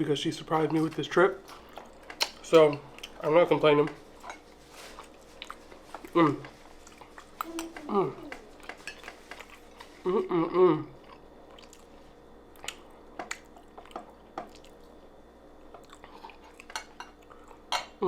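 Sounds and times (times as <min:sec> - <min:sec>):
person chewing food: 0:01.5 - 0:03.2, 0:04.3 - 0:10.1, 0:10.9 - 0:17.7
short vocal sound: 0:07.4 - 0:08.6.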